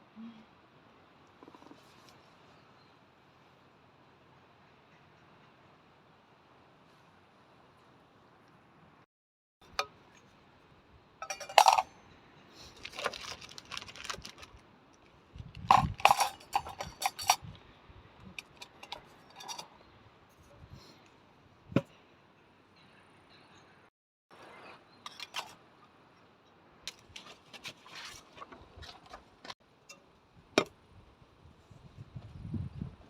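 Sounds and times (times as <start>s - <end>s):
dishes and utensils clinking: 11.2s - 11.9s, 15.7s - 17.4s, 18.4s - 19.8s.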